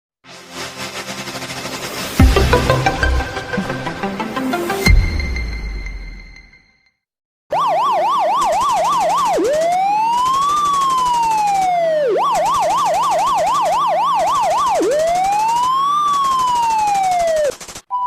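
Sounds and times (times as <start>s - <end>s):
electronic siren yelp and wail: 7.5s - 17.6s.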